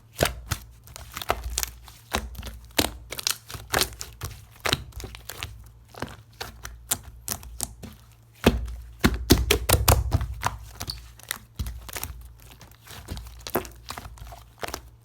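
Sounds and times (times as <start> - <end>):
slime thumping against surface: 8.5 - 10.6.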